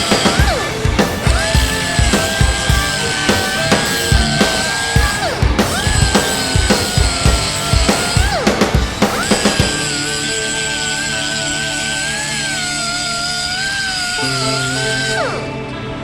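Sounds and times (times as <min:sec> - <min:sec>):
drum-kit beat: 0:00.0 - 0:10.0.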